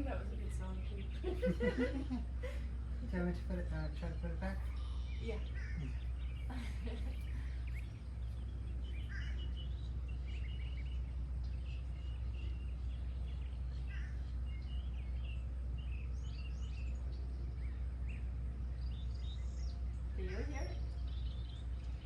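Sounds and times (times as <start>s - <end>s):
birds chirping and singing: 0.0s - 22.0s
steady low rumble: 0.0s - 22.0s.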